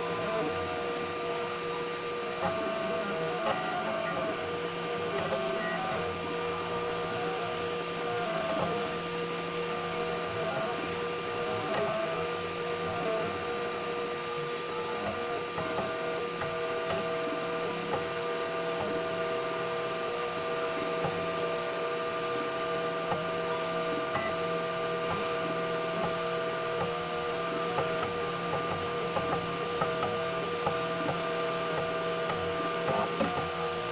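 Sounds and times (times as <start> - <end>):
stepper motors whining: 0.0 - 33.9
faint printer clicks: 2.4 - 4.4, 11.5 - 12.2, 14.4 - 33.9.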